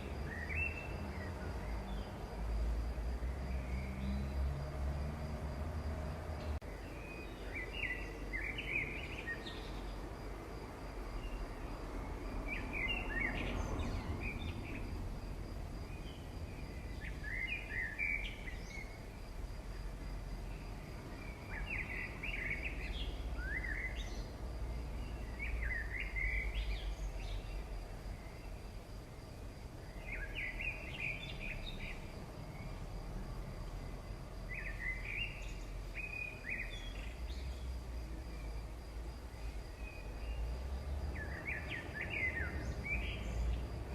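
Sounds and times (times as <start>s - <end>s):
bird chirping: 6.4s - 9.9s, 15.9s - 19.0s.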